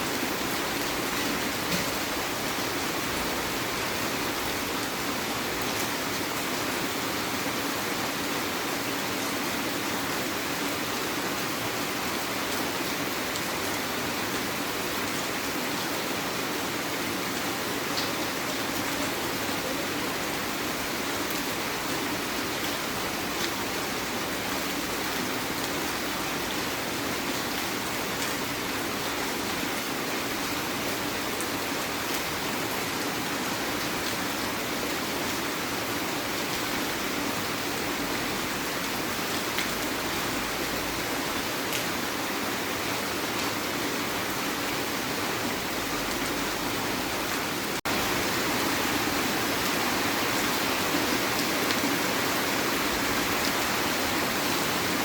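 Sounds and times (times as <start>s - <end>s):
heavy rain hissing: 47.6s - 55.0s.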